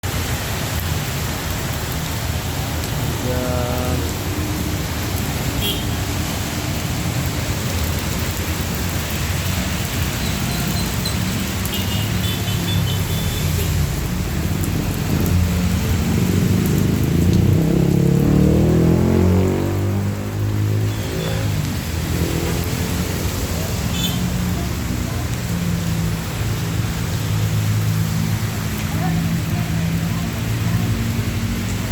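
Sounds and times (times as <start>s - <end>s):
rain falling on street: 0.0s - 31.9s
traffic: 0.0s - 31.9s
vehicle accelerating past: 14.6s - 23.7s.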